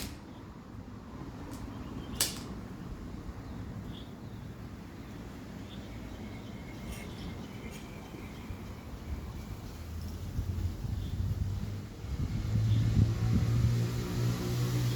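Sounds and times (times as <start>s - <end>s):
air pistol mechanism click: 0.0s - 0.3s, 1.5s - 2.6s.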